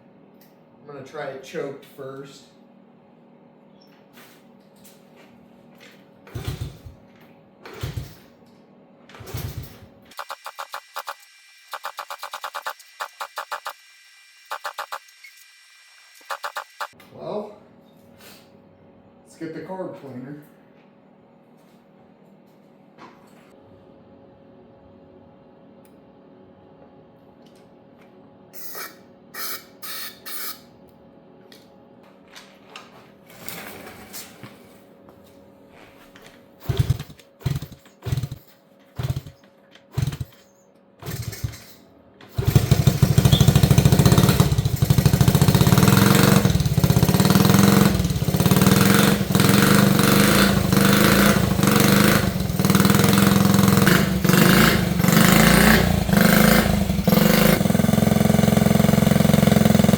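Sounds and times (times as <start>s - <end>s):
motorcycle engine running: 6.2s - 7.0s, 7.8s - 8.2s, 9.2s - 9.9s, 36.6s - 39.4s, 40.0s - 40.4s, 41.1s - 41.7s, 42.4s - 59.9s
engine kick-start thumps: 6.3s - 7.0s, 7.7s - 8.3s, 9.2s - 9.9s, 36.6s - 40.4s, 41.0s - 45.8s.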